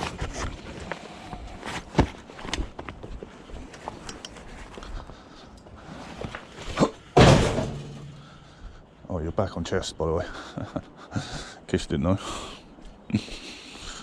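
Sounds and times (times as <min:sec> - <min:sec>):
loud rustling thump: 0:07.1 - 0:08.4.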